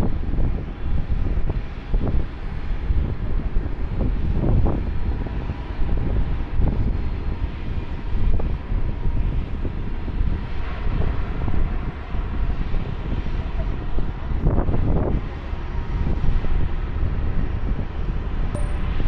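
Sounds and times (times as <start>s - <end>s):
jet engines: 0.0s - 19.0s
wind on microphone: 0.0s - 19.0s
faint high whine: 18.6s - 19.0s.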